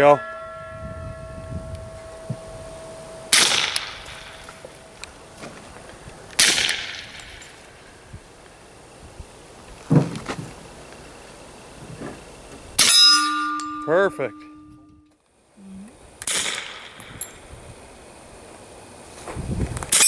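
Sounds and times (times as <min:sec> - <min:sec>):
steel target clanging: 0:01.2 - 0:08.0, 0:12.8 - 0:14.9
suppressed pistol shots: 0:06.4 - 0:07.2, 0:16.2 - 0:17.1.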